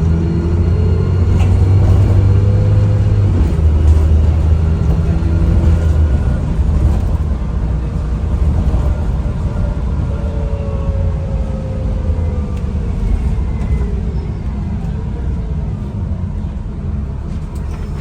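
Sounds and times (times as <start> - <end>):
bus diesel engine pulling: 0.0 - 18.0.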